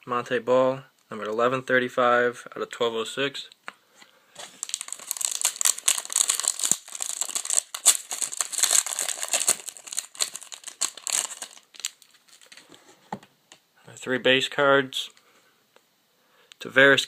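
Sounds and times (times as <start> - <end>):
wrapper crinkling and tearing: 4.4 - 12.8.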